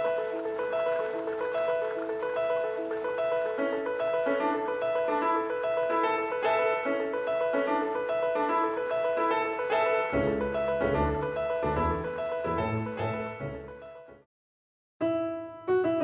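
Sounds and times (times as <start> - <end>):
piano melody: 0.0 - 14.3, 15.0 - 16.0.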